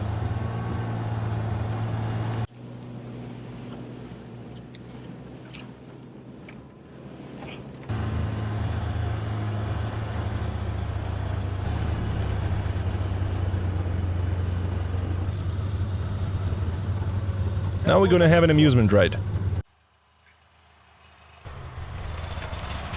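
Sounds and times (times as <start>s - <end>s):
snowmobile engine idling: 7.9s - 19.6s.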